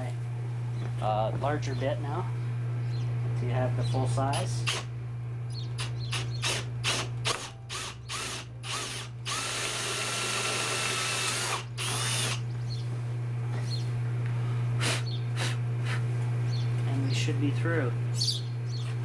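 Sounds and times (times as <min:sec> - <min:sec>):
power drill cutting through metal: 0:04.6 - 0:04.9, 0:05.8 - 0:12.4.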